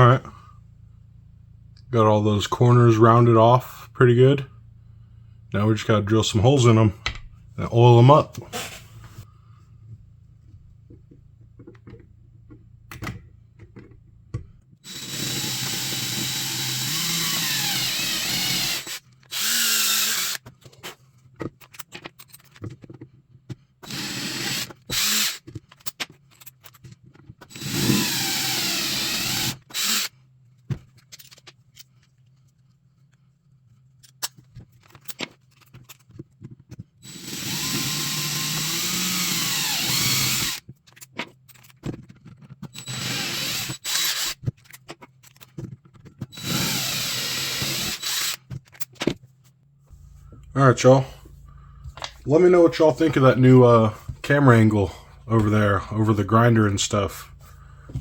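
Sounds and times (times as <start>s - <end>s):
handling knocks and clicks: 10.4s - 14.7s, 20.4s - 23.7s, 25.4s - 27.5s, 30.6s - 32.3s, 34.0s - 37.0s, 40.6s - 42.8s, 44.4s - 46.4s, 48.4s - 53.2s
electric drill boring into antler: 14.8s - 20.4s, 23.8s - 25.5s, 27.5s - 30.1s, 37.0s - 40.6s, 42.8s - 44.4s, 46.3s - 48.5s.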